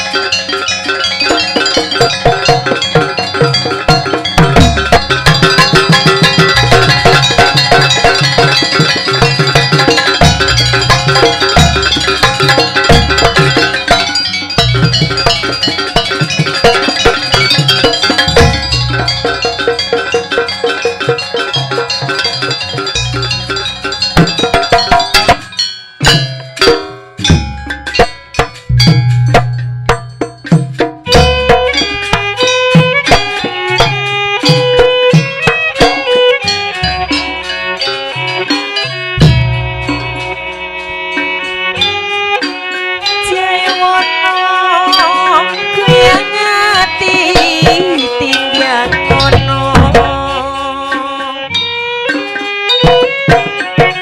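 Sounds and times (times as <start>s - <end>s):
wavering melody line: 0.0s - 30.4s
bronze percussion strikes: 0.0s - 54.0s
hand drum strokes: 0.0s - 54.0s
ringing melodic instruments: 0.0s - 54.0s.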